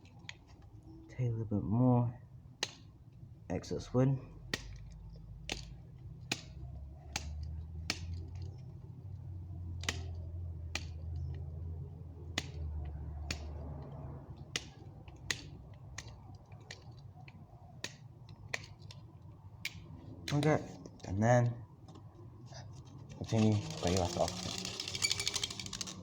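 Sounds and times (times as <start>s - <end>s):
knife cutting wood clicks: 4.4s - 8.6s, 9.8s - 11.5s, 12.3s - 20.5s.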